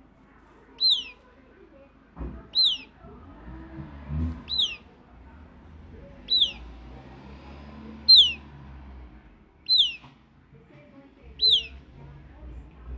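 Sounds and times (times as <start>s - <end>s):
bird chick peeping: 0.7s - 1.3s, 2.4s - 3.1s, 4.4s - 4.9s, 6.1s - 6.8s, 8.0s - 8.5s, 9.6s - 10.1s, 11.3s - 12.1s.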